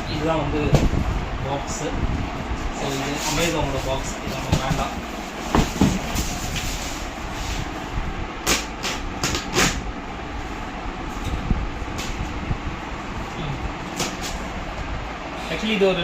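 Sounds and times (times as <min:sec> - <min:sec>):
steady background rumble: 0:00.0 - 0:16.0
cardboard box rustling knocks: 0:05.5 - 0:06.3.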